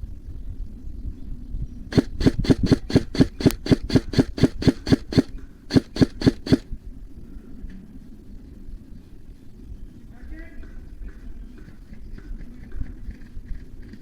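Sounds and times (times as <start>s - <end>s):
airsoft gun shots: 1.9s - 6.7s.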